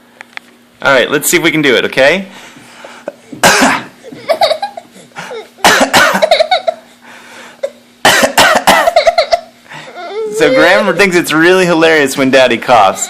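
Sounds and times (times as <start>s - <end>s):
man coughing: 3.4s - 4.6s, 5.2s - 6.9s, 7.6s - 9.5s
small child laughing: 4.0s - 5.6s, 6.2s - 6.9s, 9.0s - 11.2s.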